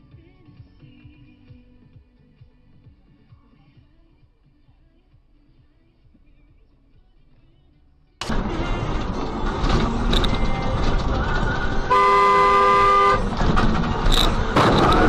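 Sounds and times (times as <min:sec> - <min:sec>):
traffic and road noise: 0:08.2 - 0:15.0
car horn: 0:08.3 - 0:15.0.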